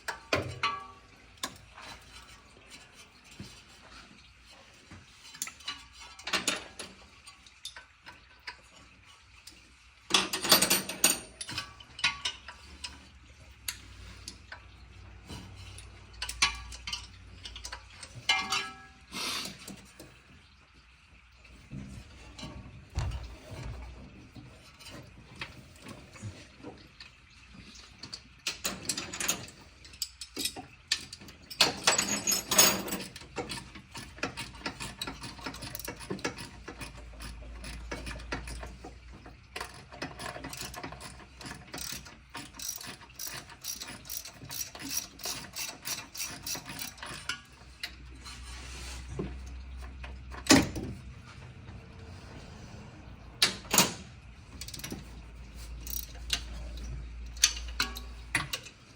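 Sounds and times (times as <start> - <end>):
metal tool clanks: 0.1 - 2.2, 10.1 - 13.0, 16.1 - 19.8, 28.5 - 38.8, 53.4 - 58.8
ratchet wrench clicking: 41.8 - 47.1, 55.8 - 56.4.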